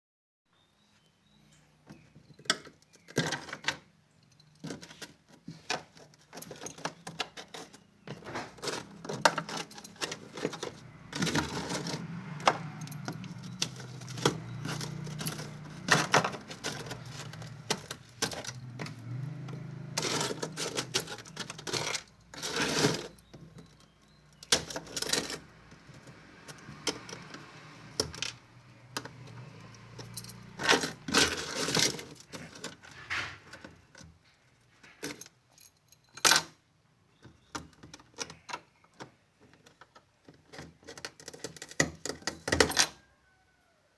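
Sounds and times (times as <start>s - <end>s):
hard objects clattering: 1.9s - 35.3s.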